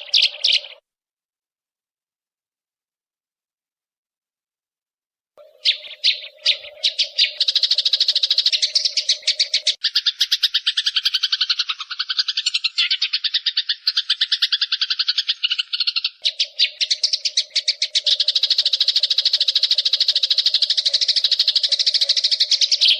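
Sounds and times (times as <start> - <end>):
sparrow chattering call: 0.0 - 0.8, 5.4 - 22.9.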